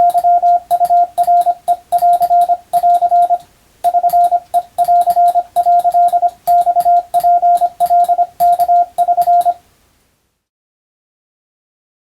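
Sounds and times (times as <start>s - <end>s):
morse code tone: 0.0s - 9.6s.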